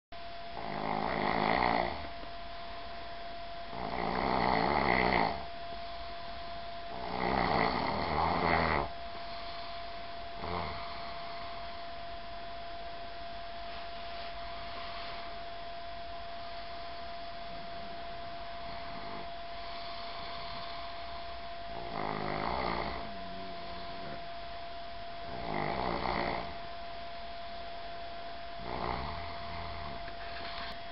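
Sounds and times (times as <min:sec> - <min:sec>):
faint steady hum: 0:00.1 - 0:30.9
person snoring: 0:00.6 - 0:02.1, 0:03.7 - 0:05.5, 0:06.9 - 0:11.8, 0:16.4 - 0:24.3, 0:25.2 - 0:26.6, 0:28.6 - 0:30.8.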